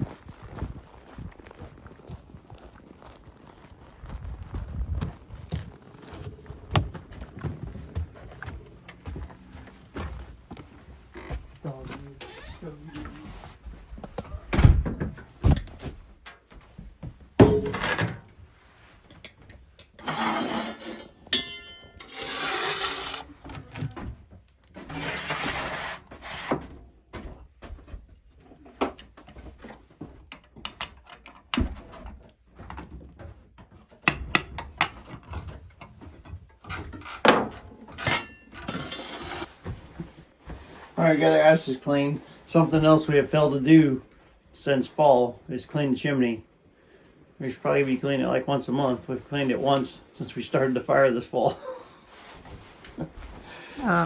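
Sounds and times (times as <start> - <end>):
shovel scraping ashes: 20.0 - 23.4, 24.9 - 26.5, 38.7 - 39.5.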